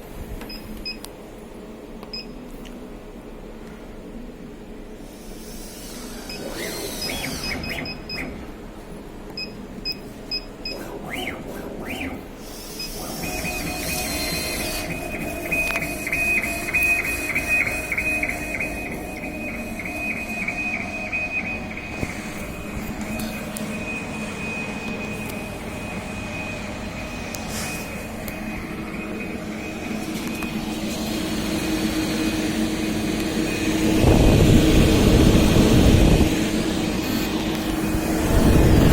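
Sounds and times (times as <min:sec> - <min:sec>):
machine hum: 0:02.9 - 0:38.9
stepper motors whining: 0:05.4 - 0:08.3, 0:10.8 - 0:38.9
high motor whine pulsing: 0:10.7 - 0:38.9
short electronic beeps: 0:12.8 - 0:30.6.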